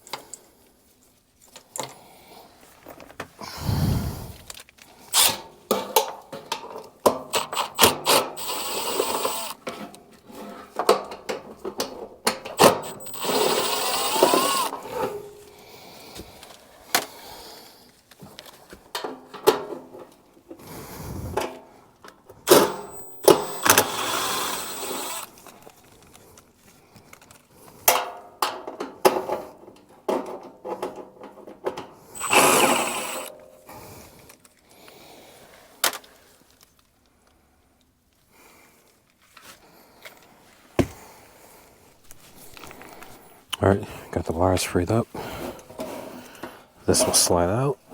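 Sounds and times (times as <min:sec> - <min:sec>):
cordless drill whining: 0:05.1 - 0:05.4, 0:07.3 - 0:09.6, 0:12.4 - 0:15.2, 0:22.5 - 0:25.5, 0:32.2 - 0:33.3
tools clicking and knocking: 0:05.2 - 0:10.0, 0:10.8 - 0:15.2, 0:22.5 - 0:25.3.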